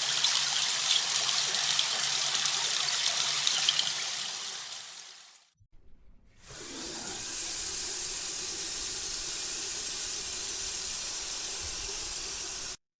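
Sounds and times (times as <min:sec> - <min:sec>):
running water hissing: 0:06.4 - 0:12.8.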